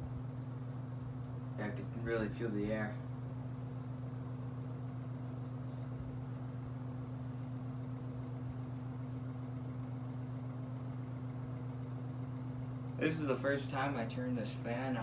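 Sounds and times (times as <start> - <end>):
box fan running: 0.0 - 15.0.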